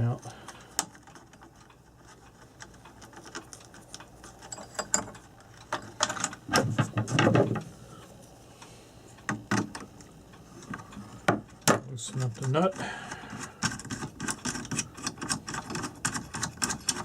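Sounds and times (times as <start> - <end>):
metal parts and tools rattling: 0.0 - 7.7, 11.6 - 17.0.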